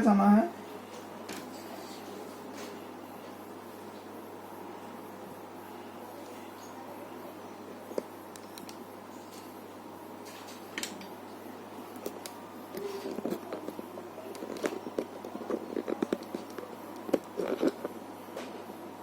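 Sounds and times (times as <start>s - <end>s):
steady low hum: 0.0s - 19.0s
laptop parts and tools clicking: 8.0s - 8.8s, 12.0s - 17.9s.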